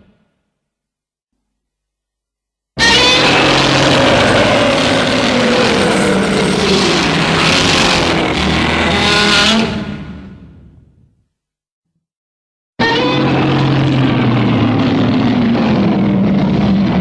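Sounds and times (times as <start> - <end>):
monster roar: 2.8 - 10.1, 13.1 - 17.0.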